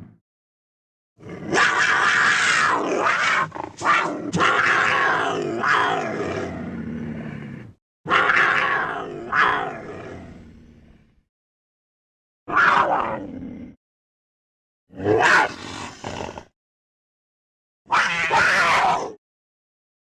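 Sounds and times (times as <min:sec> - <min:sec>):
animal roars and growls: 0:01.2 - 0:11.3, 0:12.5 - 0:13.8, 0:14.9 - 0:16.5, 0:17.9 - 0:19.2.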